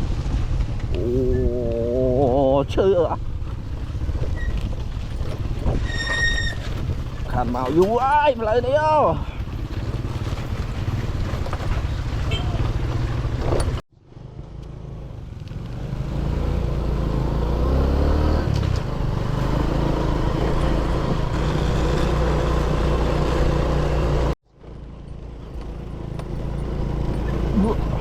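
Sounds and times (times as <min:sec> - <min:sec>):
wind rumble on microphone: 0:00.0 - 0:13.8
motorbike engine running: 0:08.5 - 0:13.8.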